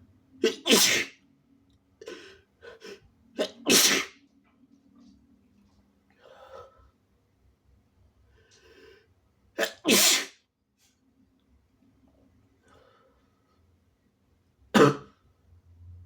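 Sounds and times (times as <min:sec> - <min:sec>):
man sneezing: 0:00.4 - 0:01.2, 0:03.4 - 0:04.2, 0:09.6 - 0:10.4
soft breathy sounds: 0:06.1 - 0:07.0.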